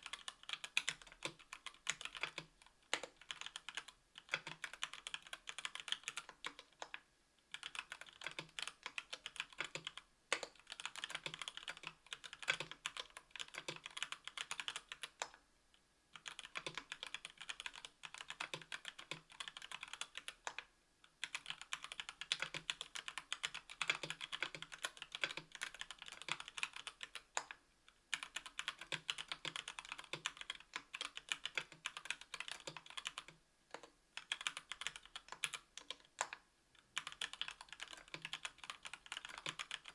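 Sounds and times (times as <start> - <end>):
typing on keyboard: 0.0 - 15.4, 16.2 - 39.9.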